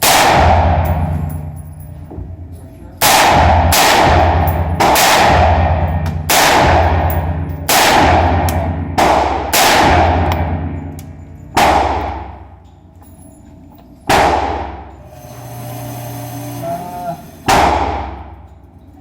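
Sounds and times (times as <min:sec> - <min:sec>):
rifle shots echoing: 0:00.0 - 0:01.3, 0:03.0 - 0:10.9, 0:11.6 - 0:12.5, 0:14.1 - 0:14.8.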